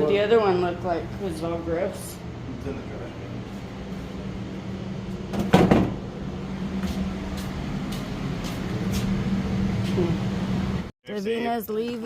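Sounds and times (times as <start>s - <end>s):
steady low hum: 0.0s - 10.9s
loud knock: 5.3s - 6.0s.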